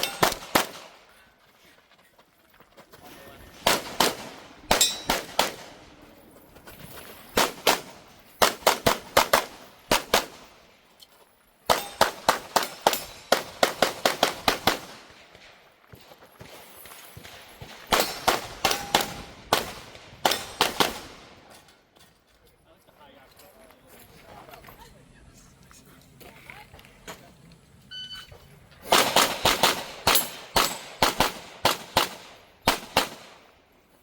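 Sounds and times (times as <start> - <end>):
pistol shots: 0.0 - 1.0, 3.6 - 5.8, 7.4 - 10.5, 11.7 - 15.5, 17.6 - 21.4, 28.8 - 33.5.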